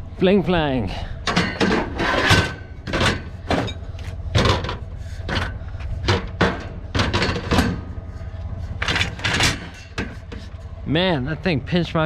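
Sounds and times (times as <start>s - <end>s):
scrap metal clanking: 1.2s - 10.7s.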